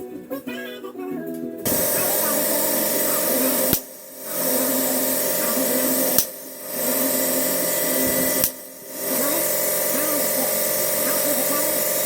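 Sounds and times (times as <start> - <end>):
power tool whirring on metal: 1.7 - 12.0
sharp click: 3.0 - 3.9, 6.0 - 6.4, 8.1 - 8.7.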